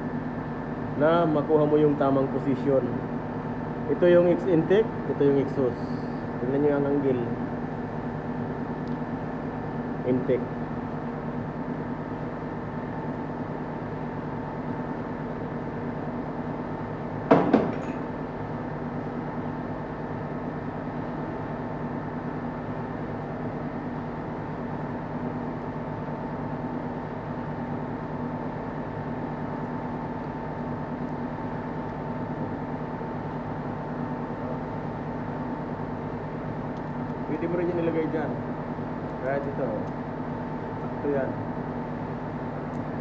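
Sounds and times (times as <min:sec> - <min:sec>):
workshop hum: 0:00.0 - 0:43.0.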